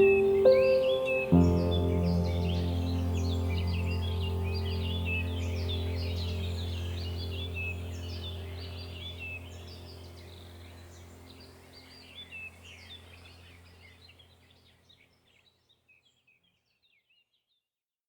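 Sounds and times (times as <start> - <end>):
low steady hum: 0.0 - 14.7
birds chirping and twittering: 0.0 - 17.6.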